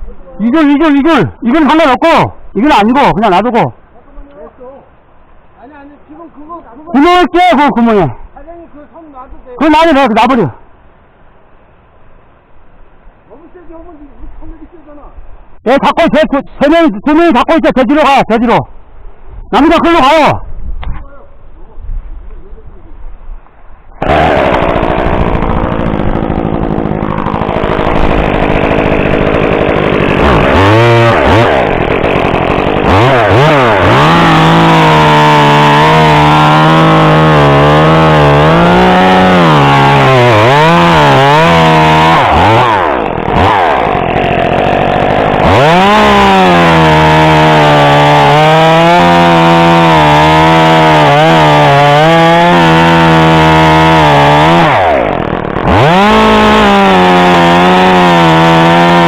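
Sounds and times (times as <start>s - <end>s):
chainsaw revving and cutting wood: 0.5s - 3.7s, 24.0s - 59.0s.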